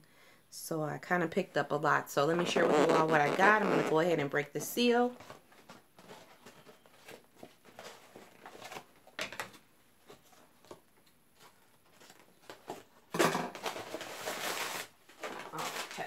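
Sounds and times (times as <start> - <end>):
package rustling and tearing: 13.5 - 16.0
packaging crinkling: 13.5 - 16.0.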